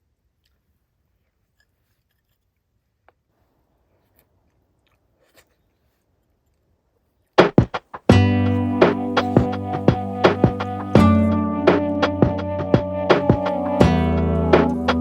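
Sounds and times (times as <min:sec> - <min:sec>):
sharp percussive hits: 0:07.4 - 0:15.0
guitar music: 0:08.1 - 0:15.0.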